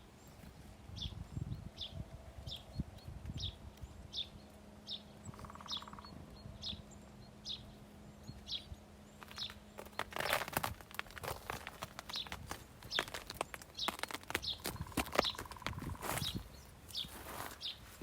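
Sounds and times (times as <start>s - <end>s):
small bird chirping: 0.0s - 18.0s
rustling and clattering: 9.2s - 16.4s.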